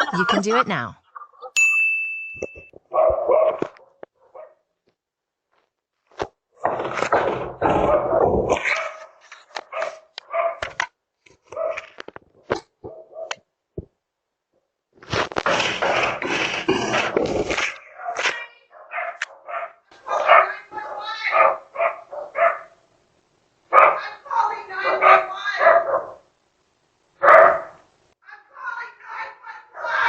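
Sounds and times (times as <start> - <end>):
doorbell beep: 1.6 - 2.7
dog barking: 2.9 - 4.7, 7.7 - 10.8, 11.5 - 12.0, 12.8 - 13.4, 17.8 - 22.8, 23.7 - 24.1, 24.8 - 26.3, 27.2 - 27.8, 29.7 - 30.0.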